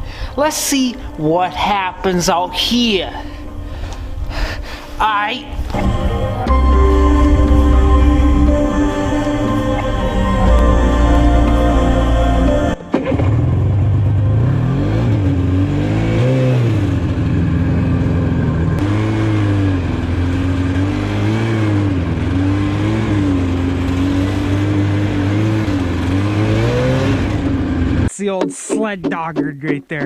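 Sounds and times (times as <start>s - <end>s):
snowmobile engine revving: 6.5s - 28.1s.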